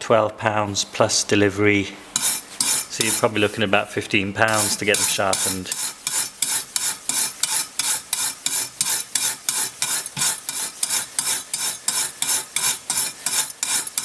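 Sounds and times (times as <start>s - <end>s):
wire brush scraping saw blade: 2.2s - 3.6s, 4.5s - 14.0s.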